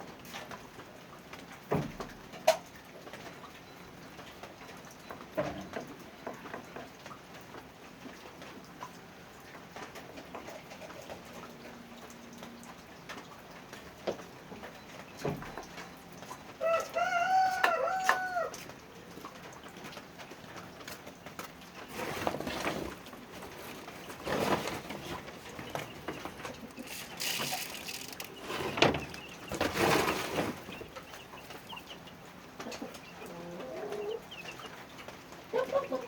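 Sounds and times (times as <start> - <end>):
rooster crowing: 16.6 - 18.6
rustling: 21.9 - 31.7.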